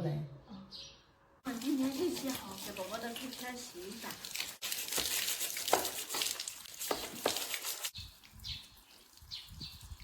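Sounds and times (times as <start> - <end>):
running water hissing: 1.5 - 8.0.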